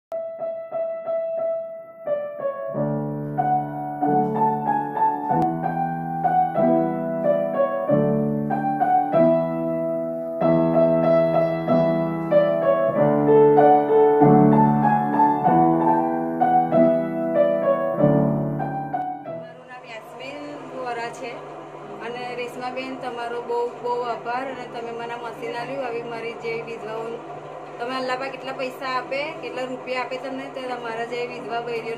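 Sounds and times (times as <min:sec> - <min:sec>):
gentle keyboard melody: 0:00.1 - 0:19.8.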